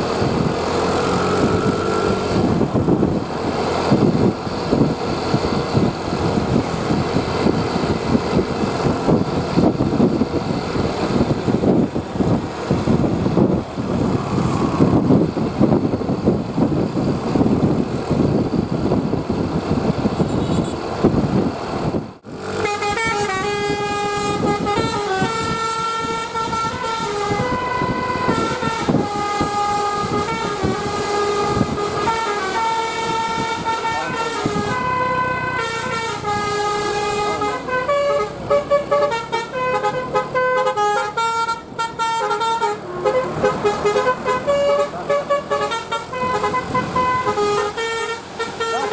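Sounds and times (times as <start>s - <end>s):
loud rumbling noise: 0.0s - 48.9s
musical bus horn tune: 20.2s - 20.8s, 22.5s - 48.9s.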